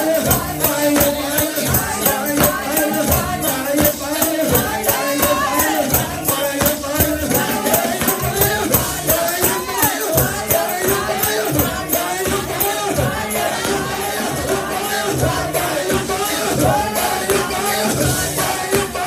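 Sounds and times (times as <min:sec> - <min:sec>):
percussion steady beat: 0:00.0 - 0:19.0
voices singing: 0:00.0 - 0:19.0.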